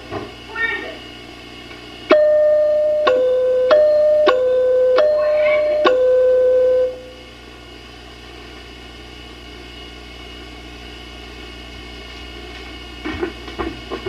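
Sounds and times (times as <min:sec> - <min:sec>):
keyboard ding-dong chime: 0:02.1 - 0:07.1.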